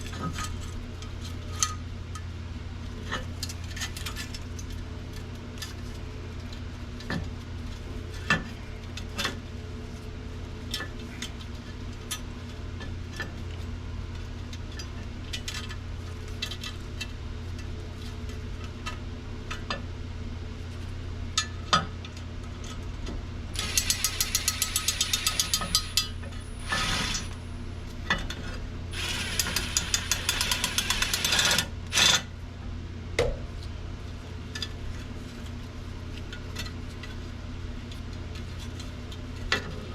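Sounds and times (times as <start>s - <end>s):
steady low hum: 0.0s - 39.9s
power tool rattling: 23.6s - 26.0s, 26.6s - 27.3s, 29.0s - 32.2s.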